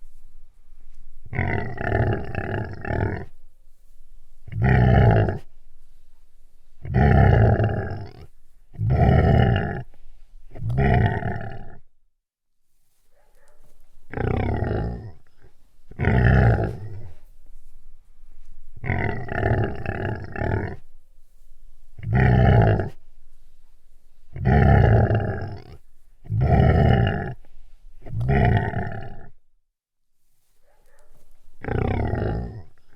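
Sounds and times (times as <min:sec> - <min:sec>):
large animal growling: 0:01.3 - 0:03.3, 0:04.5 - 0:05.5, 0:06.8 - 0:09.9, 0:10.5 - 0:11.8, 0:14.1 - 0:17.2, 0:18.8 - 0:20.9, 0:22.0 - 0:23.0, 0:24.3 - 0:29.4, 0:31.6 - 0:32.9.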